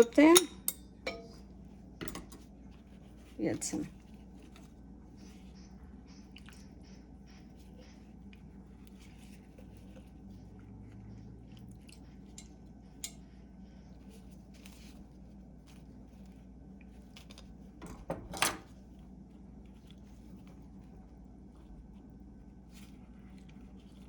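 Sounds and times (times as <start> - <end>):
fork tapping against a jar: 0.0 - 1.4.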